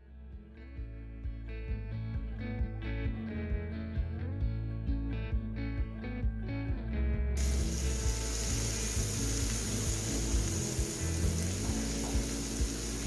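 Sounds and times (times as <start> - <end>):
background music with bass: 0.0 - 13.0
food sizzling in a pan: 7.4 - 13.0.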